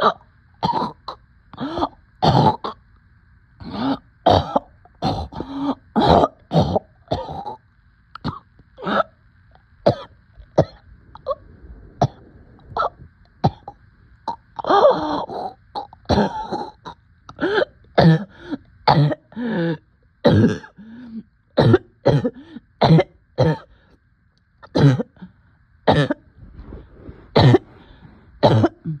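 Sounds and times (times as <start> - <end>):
person coughing: 0.0 - 2.8, 3.7 - 7.6, 14.3 - 19.4, 20.2 - 20.8, 21.6 - 23.7, 24.7 - 25.2, 25.9 - 26.2, 27.3 - 29.0.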